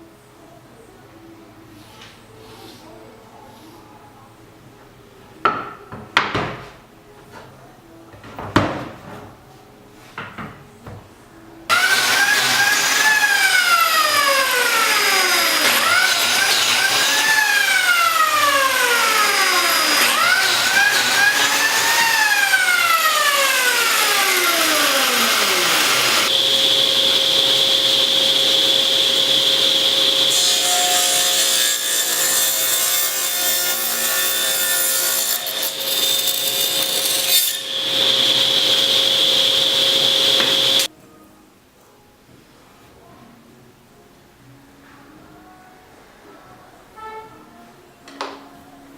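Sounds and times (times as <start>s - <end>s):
power saw cutting wood: 11.7s - 40.9s.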